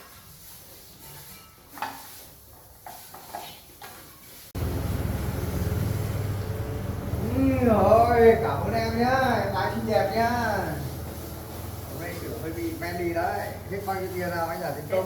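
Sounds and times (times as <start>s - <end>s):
steady low hum: 4.6s - 9.9s.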